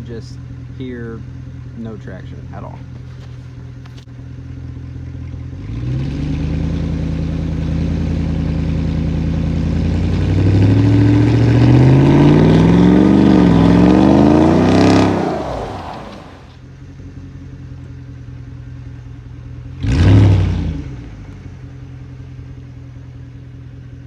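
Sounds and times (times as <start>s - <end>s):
engine revving: 5.6s - 16.6s.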